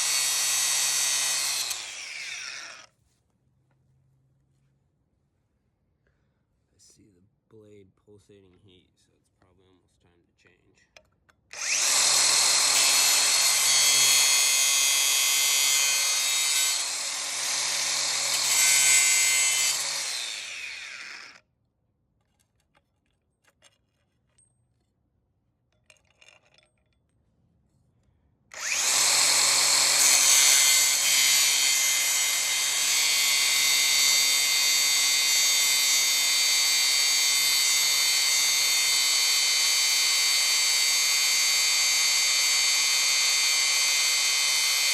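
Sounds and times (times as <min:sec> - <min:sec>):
angle grinder cutting bolt: 0:00.0 - 0:02.9, 0:11.5 - 0:21.4, 0:28.5 - 0:44.9.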